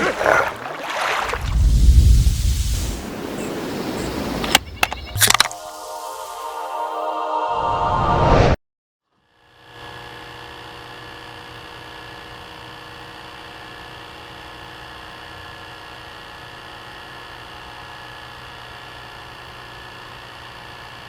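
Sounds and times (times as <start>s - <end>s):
light hiss: 1.8s - 4.5s.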